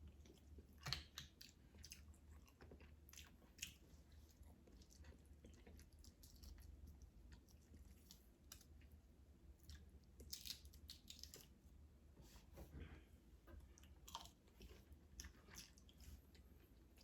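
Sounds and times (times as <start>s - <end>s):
person chewing seafood: 0.0s - 8.9s, 13.8s - 17.0s
low steady hum: 0.0s - 17.0s.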